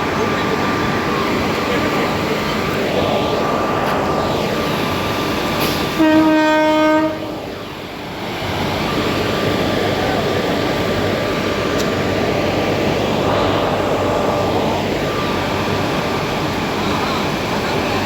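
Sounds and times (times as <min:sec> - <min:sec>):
train running: 0:00.0 - 0:18.0
train horn blast: 0:05.6 - 0:07.6.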